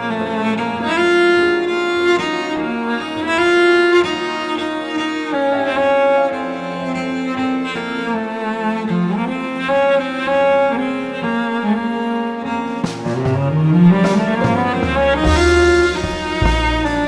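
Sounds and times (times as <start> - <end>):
bowed strings playing held notes: 0.0 - 17.0.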